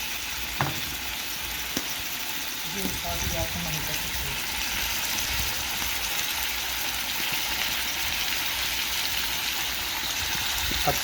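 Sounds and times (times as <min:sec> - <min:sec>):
fish frying in a pot: 0:00.0 - 0:11.0.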